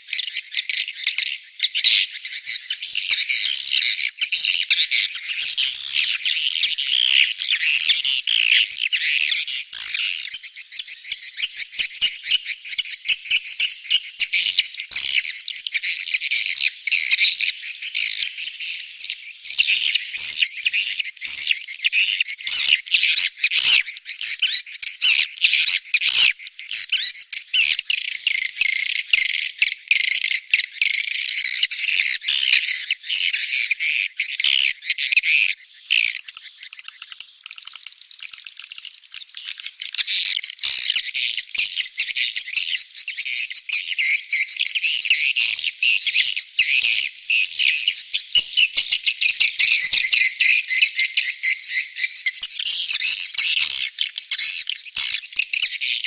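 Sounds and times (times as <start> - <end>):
swiftlets chattering and twittering: 44.6 - 55.9.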